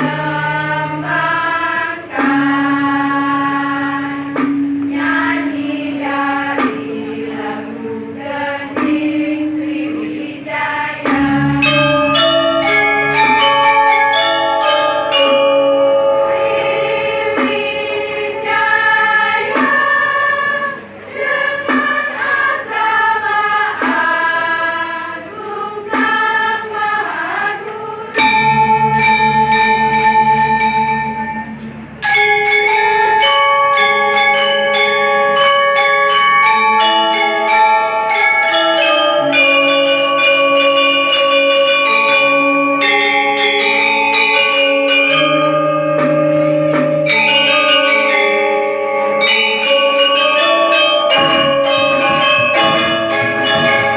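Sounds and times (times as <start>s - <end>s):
tuned bells ringing a melody: 0.0s - 23.7s, 28.2s - 53.9s
choir singing: 0.0s - 31.9s, 49.0s - 53.9s.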